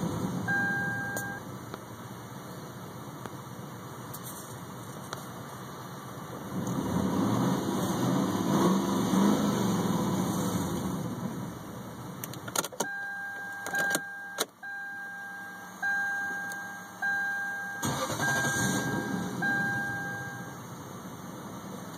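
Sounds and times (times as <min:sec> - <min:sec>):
two-note electronic warning chime: 0:00.5 - 0:01.4, 0:12.9 - 0:20.6
car engine cranking: 0:16.3 - 0:20.6.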